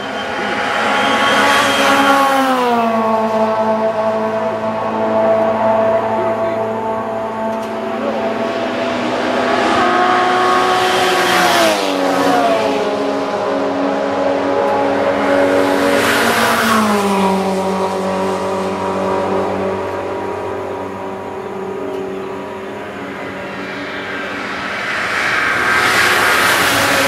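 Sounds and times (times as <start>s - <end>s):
race cars passing at speed: 0.0s - 27.0s
race engines running: 0.0s - 27.0s.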